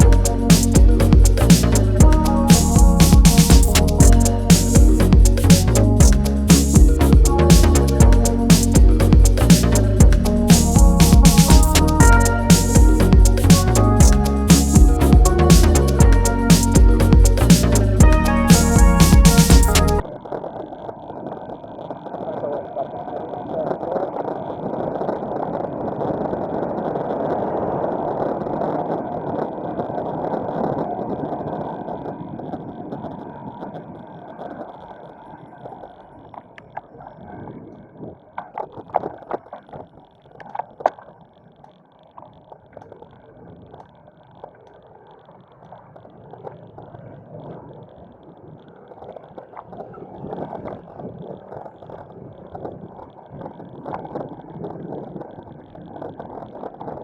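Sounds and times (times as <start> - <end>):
wind over microphone: 24.4 - 39.9, 45.6 - 57.0.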